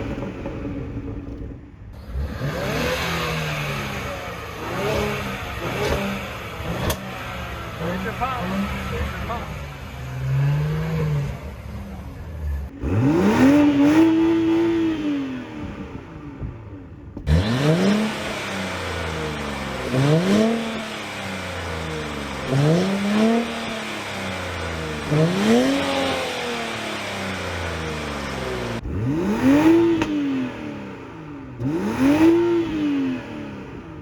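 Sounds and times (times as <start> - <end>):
sports car engine revving: 0.0 - 34.0.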